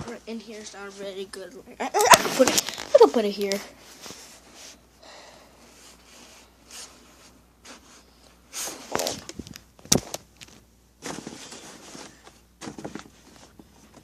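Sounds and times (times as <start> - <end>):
objects rustling: 2.0 - 4.8, 5.6 - 14.0.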